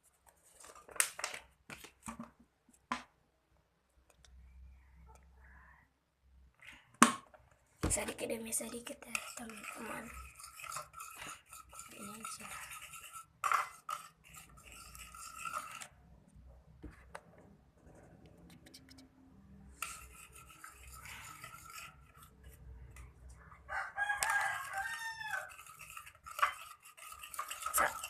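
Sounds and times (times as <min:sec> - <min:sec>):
slime stirred in plastic container: 0:08.0 - 0:16.1, 0:19.7 - 0:28.0
rooster crowing: 0:23.7 - 0:25.5.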